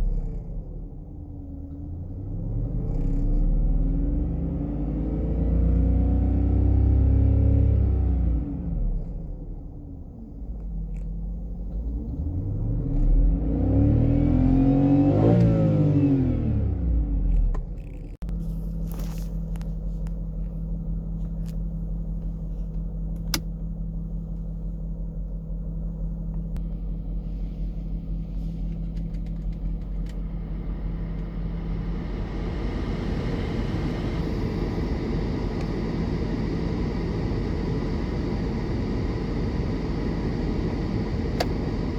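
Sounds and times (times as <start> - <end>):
car engine revving and idling: 0.0 - 41.9.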